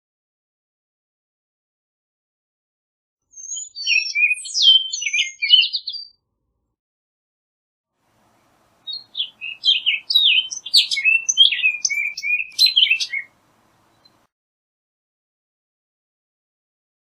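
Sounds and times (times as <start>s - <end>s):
oriole singing: 8.4s - 14.2s.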